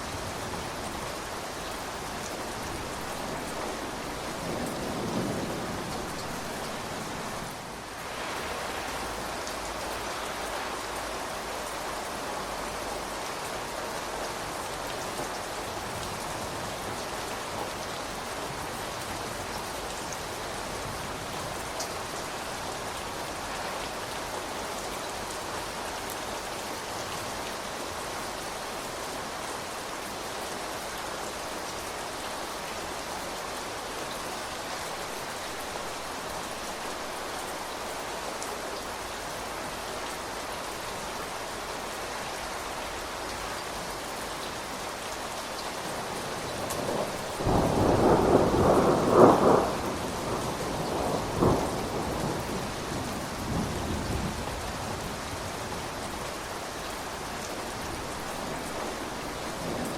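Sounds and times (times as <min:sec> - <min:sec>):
steady rain: 0:00.0 - 0:59.9
thunder rumble: 0:46.5 - 0:55.0.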